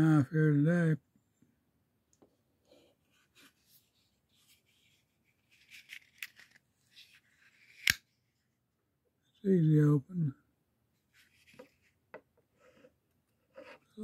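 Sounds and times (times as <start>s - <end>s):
faint scrapes and rustles: 2.6s - 7.9s, 11.1s - 14.0s.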